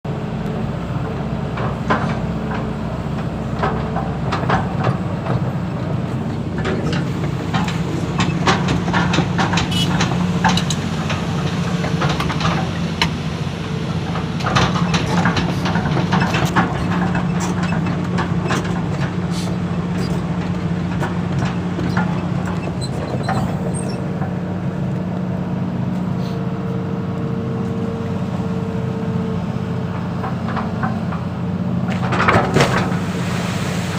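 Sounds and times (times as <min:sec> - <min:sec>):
excavator diesel engine running: 0:00.1 - 0:33.9
sharp knocks and clanks: 0:01.5 - 0:05.7, 0:06.3 - 0:13.2, 0:14.1 - 0:24.4.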